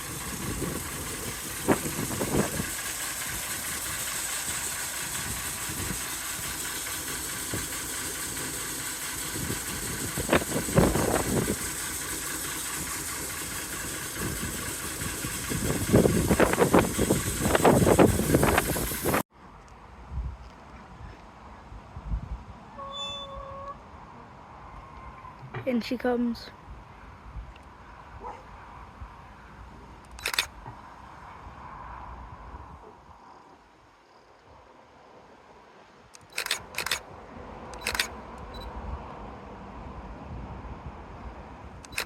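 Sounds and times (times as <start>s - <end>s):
train running: 0.0s - 19.2s, 29.8s - 30.5s, 36.1s - 37.0s, 37.6s - 38.7s.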